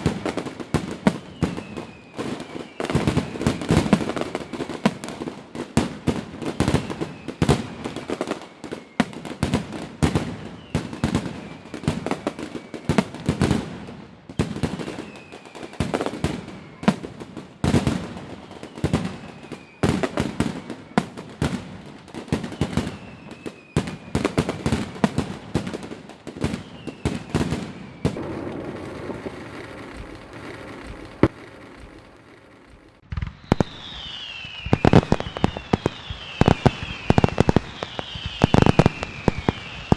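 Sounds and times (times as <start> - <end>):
falling whistles: 0.0 - 5.3, 6.2 - 13.4, 14.4 - 21.6, 22.2 - 39.9
fireworks bangs: 0.0 - 39.9
crackling shell bursts: 28.1 - 39.6.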